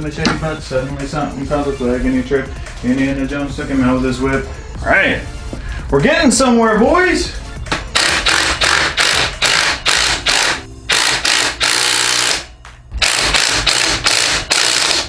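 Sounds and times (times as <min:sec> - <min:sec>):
ratchet wrench rasping: 0:07.9 - 0:15.0.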